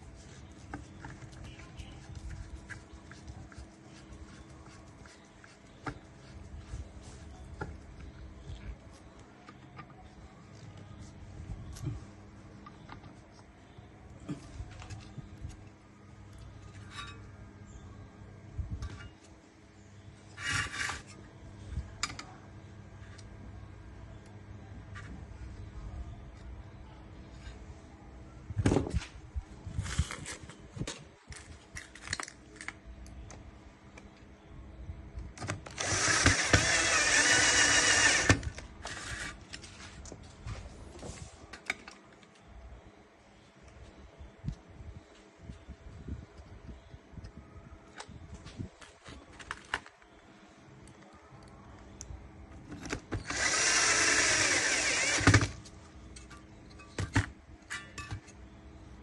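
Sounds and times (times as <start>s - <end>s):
small power tool running: 35.8s - 39.2s, 53.2s - 55.5s
small electric motor whining: 35.8s - 39.4s, 53.2s - 55.5s.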